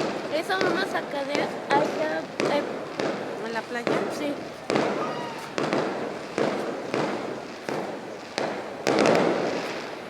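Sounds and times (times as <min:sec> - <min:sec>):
fireworks bursting: 0:00.0 - 0:10.0.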